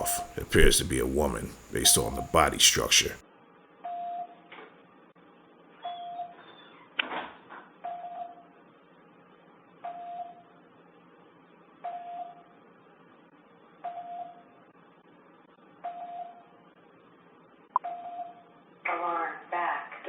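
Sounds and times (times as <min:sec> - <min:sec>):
security alarm chime: 0:00.0 - 0:03.1.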